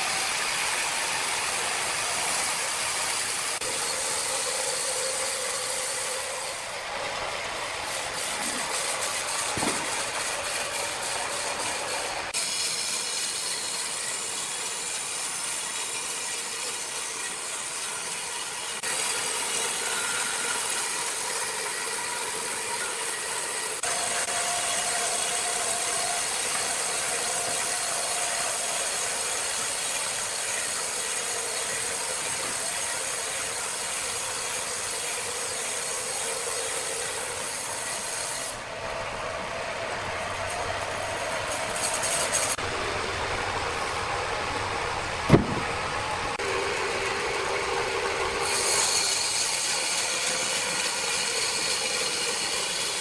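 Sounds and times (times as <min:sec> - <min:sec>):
saw cutting through wood: 0:00.0 - 0:53.0
sawmill machinery running: 0:00.0 - 0:53.0
sharp knock: 0:09.5 - 0:10.1, 0:45.3 - 0:45.8.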